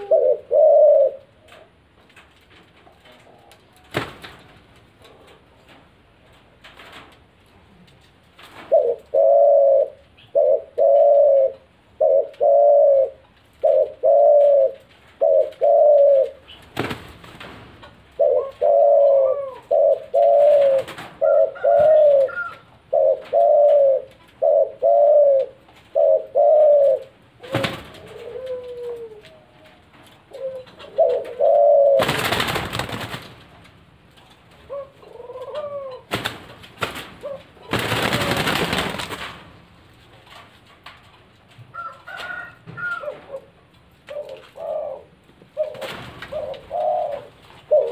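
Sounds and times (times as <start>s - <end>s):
doves cooing: 0.0s - 1.8s, 8.6s - 16.9s, 18.1s - 33.4s, 34.3s - 39.3s, 41.7s - 47.9s.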